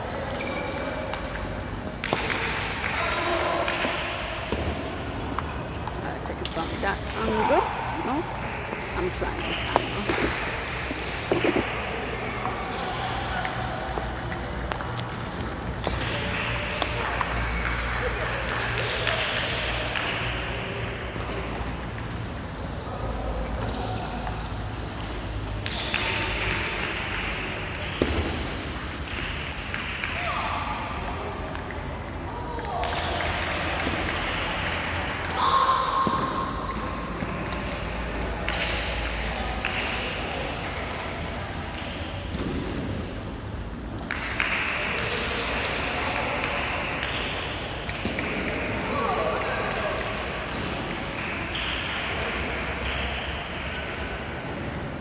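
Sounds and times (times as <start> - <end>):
voices and chatter: 0.0 - 27.8.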